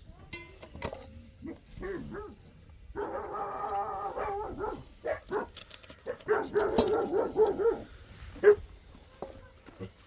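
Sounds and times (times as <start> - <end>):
dog barking: 1.4 - 8.7
dog long drawn-out call: 1.4 - 8.7.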